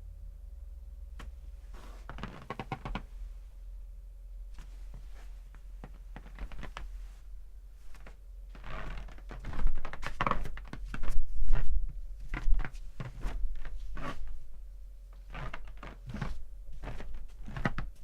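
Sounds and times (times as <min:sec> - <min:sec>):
footsteps on creaking floor: 0:01.8 - 0:03.0, 0:04.6 - 0:06.9, 0:07.9 - 0:14.3, 0:15.3 - 0:17.9.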